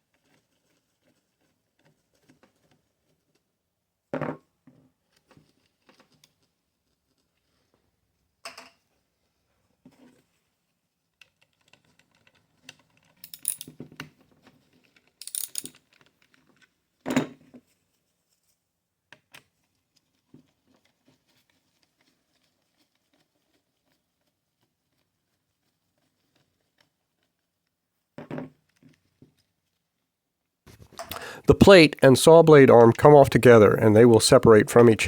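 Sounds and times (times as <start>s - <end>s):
tools clicking and clinking: 13.2s - 13.7s, 15.2s - 15.8s
parts rattling: 15.2s - 15.7s.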